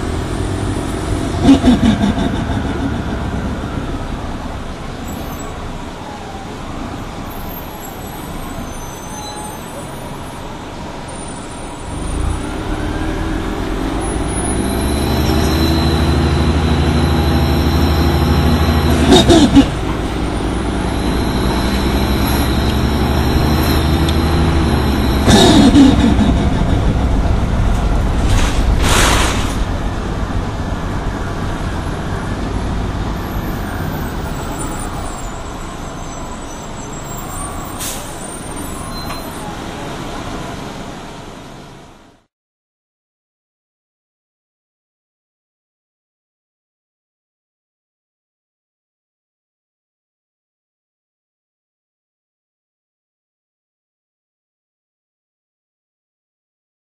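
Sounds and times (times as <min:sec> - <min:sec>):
bus engine accelerating: 0:00.0 - 0:42.3.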